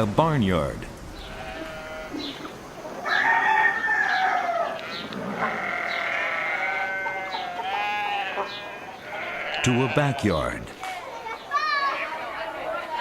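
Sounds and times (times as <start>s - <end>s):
farm animals calling: 1.1s - 13.0s.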